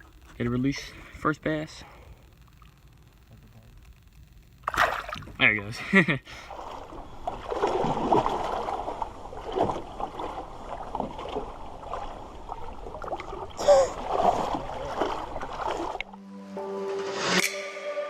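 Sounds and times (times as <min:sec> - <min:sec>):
water sloshing in a shallow river: 0:04.6 - 0:05.4, 0:06.4 - 0:16.2.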